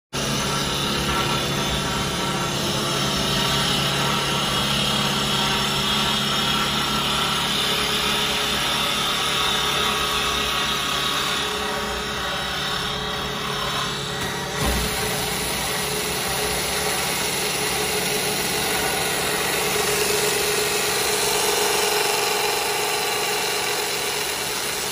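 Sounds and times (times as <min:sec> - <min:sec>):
lathe motor hum: 0:00.2 - 0:24.9.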